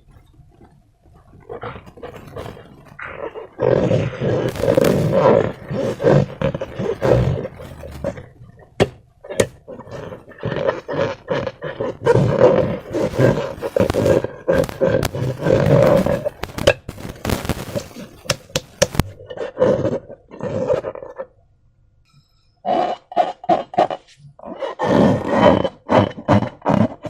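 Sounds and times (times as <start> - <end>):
slime squelching: 0.0 - 19.3
rubber balloons squeaking: 1.9 - 19.2
balloon snapping: 4.4 - 8.2, 12.1 - 19.2.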